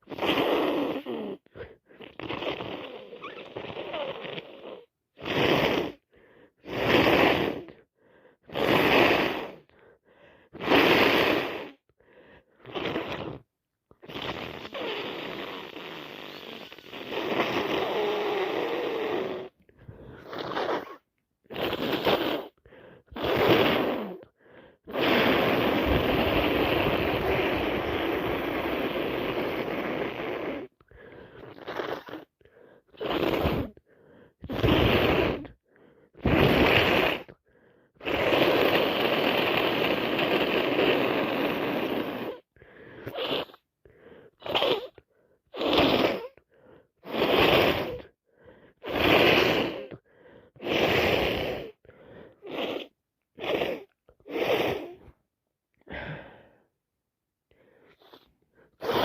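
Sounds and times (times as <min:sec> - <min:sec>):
person blowing congested nose: 0:00.0 - 0:55.2, 0:55.8 - 0:56.8, 0:57.5 - 0:59.0
short sharp sniffs: 0:14.0 - 0:55.2, 0:57.5 - 0:59.0.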